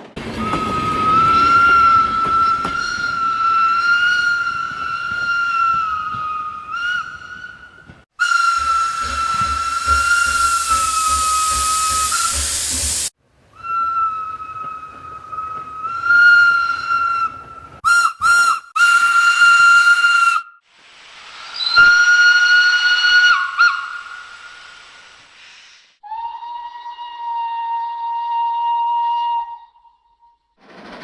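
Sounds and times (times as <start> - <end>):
steam locomotive whistles: 0.2 - 20.6.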